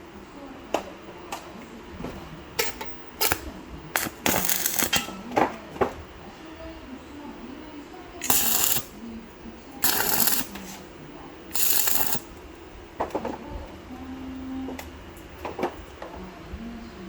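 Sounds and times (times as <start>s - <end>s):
welding crackle: 2.6s - 5.2s, 8.2s - 9.0s, 9.8s - 10.8s, 11.5s - 12.4s.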